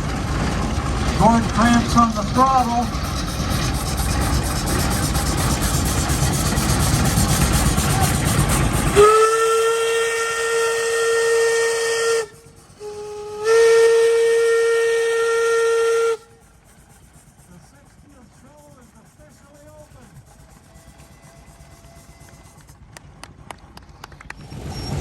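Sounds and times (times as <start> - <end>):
steam engine hissing and rumbling: 0.0 - 25.0
steam whistle blowing: 8.9 - 16.4, 20.6 - 22.6.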